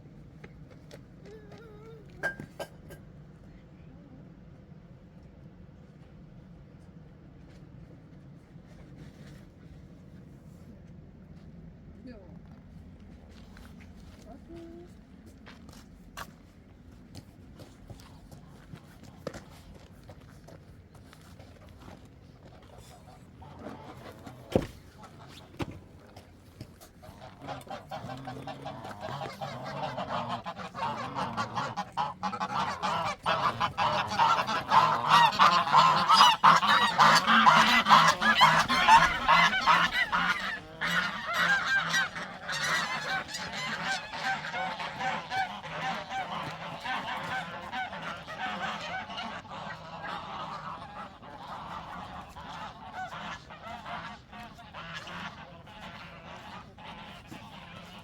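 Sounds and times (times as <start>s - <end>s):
geese honking: 27.0s - 58.0s.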